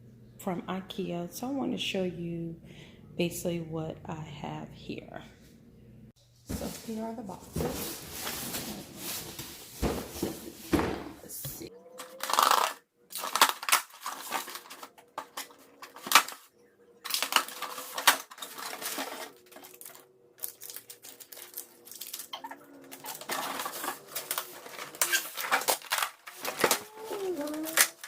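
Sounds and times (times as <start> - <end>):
packing material rustling: 6.5 - 10.9, 12.1 - 28.0.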